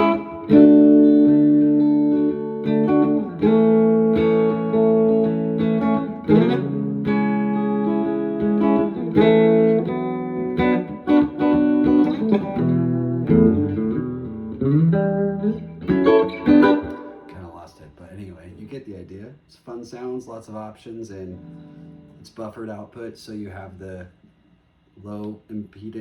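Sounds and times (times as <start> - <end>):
electric guitar chords and notes: 0.0 - 17.6, 21.3 - 22.2.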